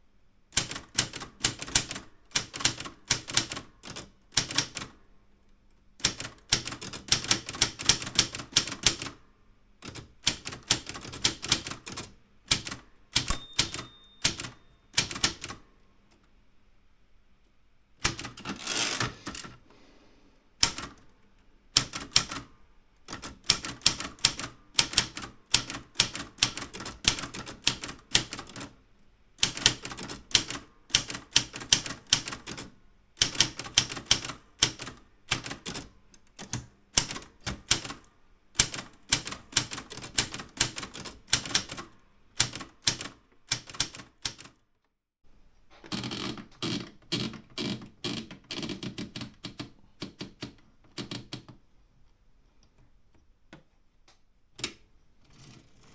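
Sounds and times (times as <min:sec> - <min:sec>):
typewriter keystrokes: 0:00.5 - 0:05.0, 0:06.0 - 0:09.2, 0:09.8 - 0:15.7, 0:18.0 - 0:19.6, 0:20.6 - 0:21.1, 0:21.8 - 0:28.8, 0:29.4 - 0:44.6, 0:45.8 - 0:51.5
typewriter bell ringing: 0:13.2 - 0:15.2
typewriter carriage return sliding: 0:18.0 - 0:19.6.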